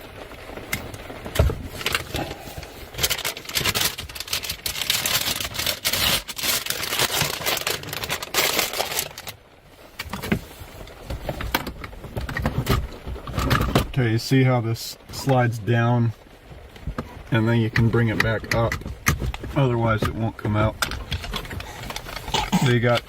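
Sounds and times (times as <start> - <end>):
plastic parts scraping and rattling: 0.7 - 9.4, 10.0 - 14.0, 16.8 - 23.0.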